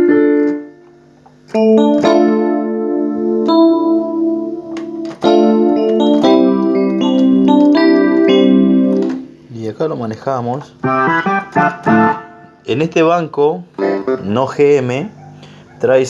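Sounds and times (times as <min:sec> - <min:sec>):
synthesizer chords: 0:01.5 - 0:09.5, 0:10.8 - 0:12.7, 0:13.8 - 0:14.4.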